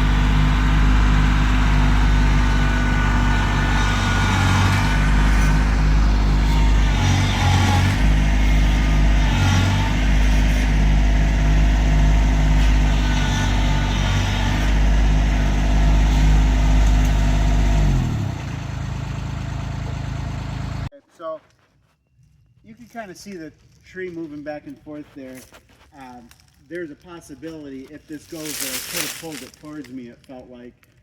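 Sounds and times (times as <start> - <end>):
tractor diesel engine revving: 0.0 - 20.9.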